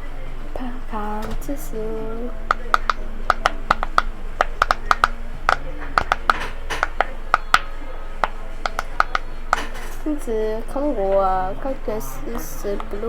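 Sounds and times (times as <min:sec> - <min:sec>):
faint steady hum: 0:00.0 - 0:13.0
sharp bright clicks: 0:02.4 - 0:10.0.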